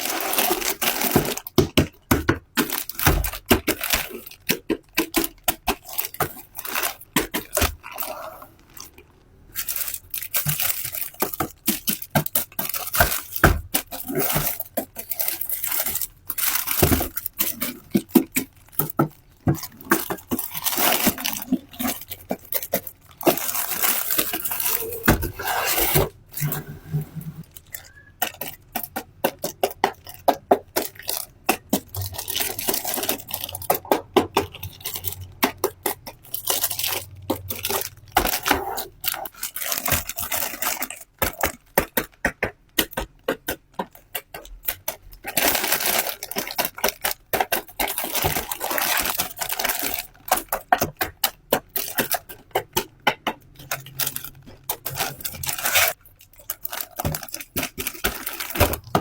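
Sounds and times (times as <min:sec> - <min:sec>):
cardboard and plastic tearing: 0:00.0 - 0:28.9, 0:30.0 - 0:42.1, 0:43.9 - 0:52.7, 0:53.6 - 0:59.0.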